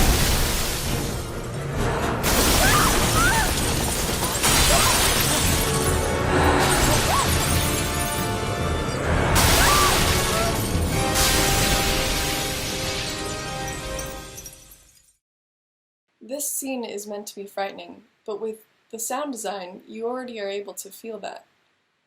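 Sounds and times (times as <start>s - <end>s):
harsh shattering noise surges: 0.0s - 8.5s, 9.2s - 13.8s
dark film music: 0.9s - 3.6s, 5.4s - 12.0s.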